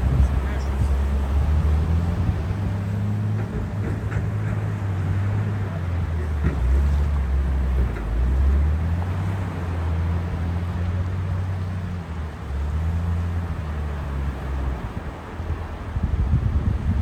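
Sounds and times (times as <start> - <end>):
steady low rumble: 0.0 - 8.0
hiss of wind and water: 0.0 - 17.0.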